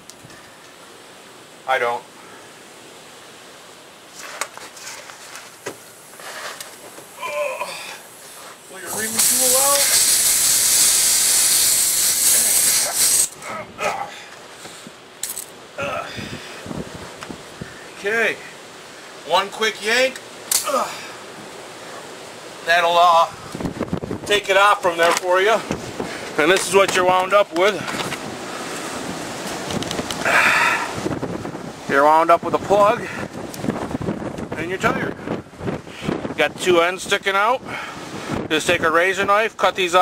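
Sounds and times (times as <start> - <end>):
air hissing from tire: 8.1 - 13.4
wind buffeting microphone: 15.8 - 18.0, 23.2 - 39.5.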